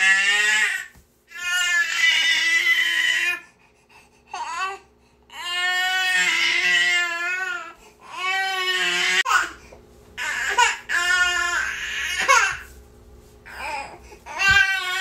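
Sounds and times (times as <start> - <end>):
baby crying: 4.3 - 9.6, 10.2 - 12.7, 13.5 - 15.0.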